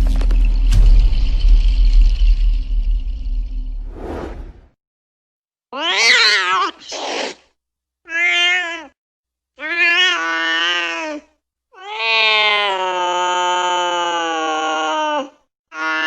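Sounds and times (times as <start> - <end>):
cat meowing: 5.8 - 7.4, 8.1 - 9.0, 9.6 - 13.2.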